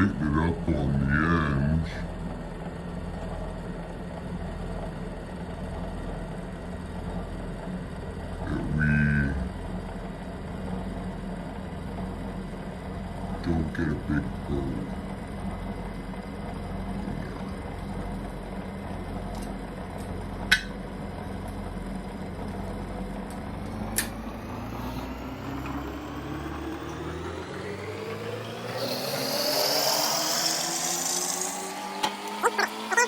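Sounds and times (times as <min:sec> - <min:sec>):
drill press running: 0:09.2 - 0:33.0.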